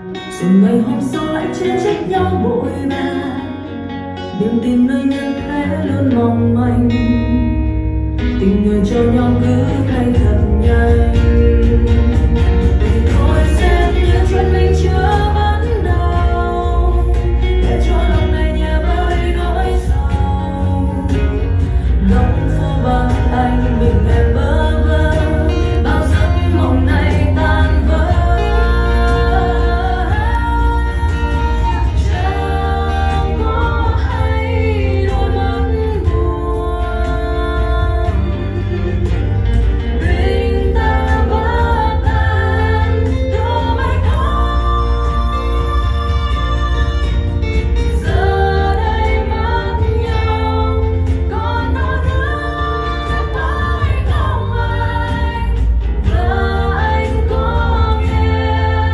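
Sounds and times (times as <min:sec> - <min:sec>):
pop ballad singing: 0:00.0 - 0:58.9
steady bass line: 0:05.6 - 0:58.9.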